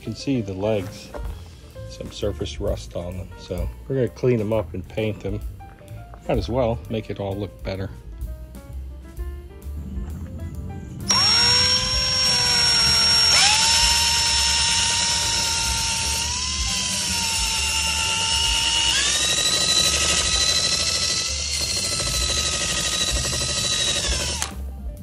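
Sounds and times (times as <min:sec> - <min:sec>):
power tool whine: 0:11.0 - 0:24.6
wire wheel scouring metal: 0:11.1 - 0:24.5.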